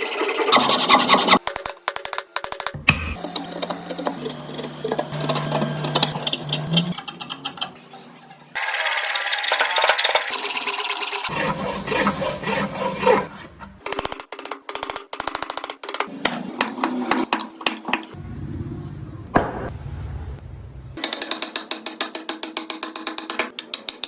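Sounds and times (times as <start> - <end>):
tools rasping and sawing wood: 0.0 - 1.4, 2.9 - 18.2.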